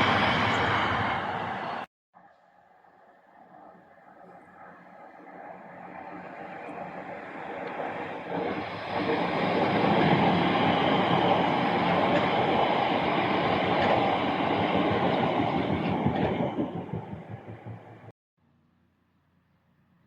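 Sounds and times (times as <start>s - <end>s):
train wheels rumbling on rails: 0.0s - 1.9s, 4.6s - 18.1s.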